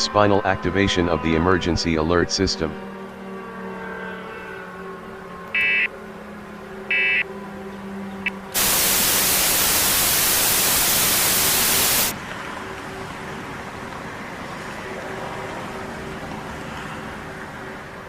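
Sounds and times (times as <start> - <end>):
short data bursts: 8.2 - 12.1
loud white-noise static: 8.6 - 12.1.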